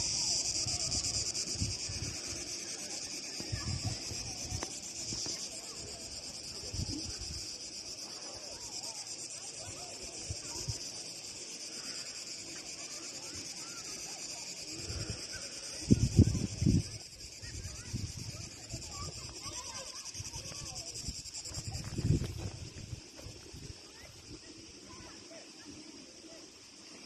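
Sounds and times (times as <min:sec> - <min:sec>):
cicadas shrilling: 0:00.0 - 0:27.0
wind buffeting microphone: 0:03.4 - 0:05.2, 0:15.8 - 0:24.4.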